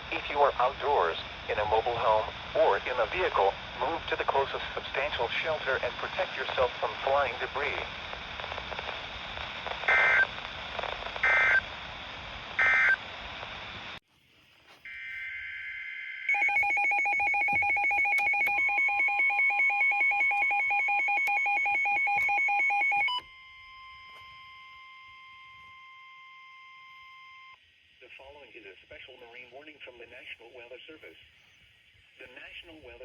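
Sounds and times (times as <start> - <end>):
radio hiss: 0.0 - 15.2, 27.9 - 33.0.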